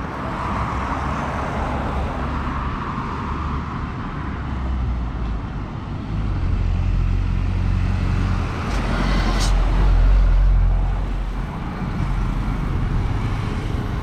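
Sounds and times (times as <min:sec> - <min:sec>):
heavy vehicle engine hum: 0:00.0 - 0:14.0
road traffic rumble: 0:00.0 - 0:14.0.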